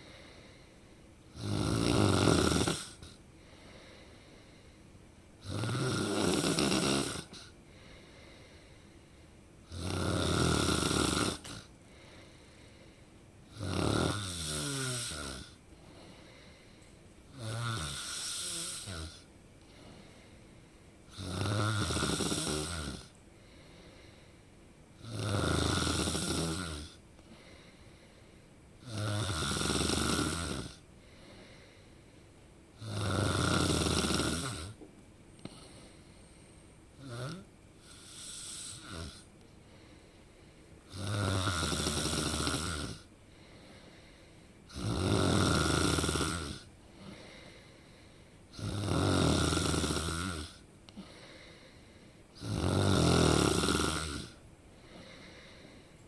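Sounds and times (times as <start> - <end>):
quiet breathing: 0.0 - 1.6, 2.4 - 56.0
person snoring loudly: 1.3 - 3.2, 5.4 - 7.5, 9.7 - 11.7, 13.5 - 15.6, 17.3 - 19.3, 21.1 - 23.2, 25.0 - 27.0, 28.8 - 30.8, 32.8 - 34.8, 37.0 - 39.3, 40.9 - 43.1, 44.7 - 46.7, 48.6 - 50.6, 52.4 - 54.4.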